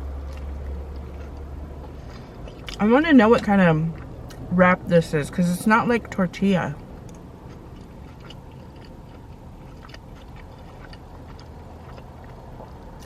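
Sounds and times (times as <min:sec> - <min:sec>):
person chewing food: 0:00.0 - 0:02.8, 0:03.4 - 0:04.5, 0:06.8 - 0:13.0
steady low hum: 0:00.0 - 0:13.0.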